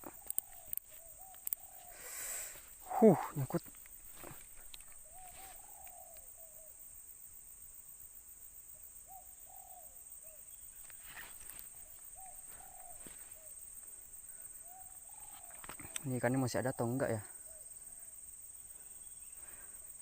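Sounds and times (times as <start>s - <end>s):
bird cooing call: 0.0s - 6.8s, 9.0s - 13.6s, 14.3s - 16.1s, 16.8s - 18.2s
steady high hiss: 0.0s - 17.1s.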